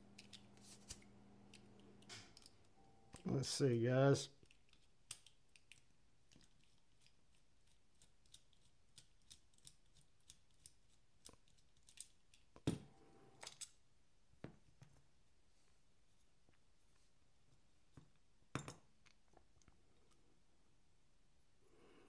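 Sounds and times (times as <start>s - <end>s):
metal knife parts clicking: 13.4s - 13.8s.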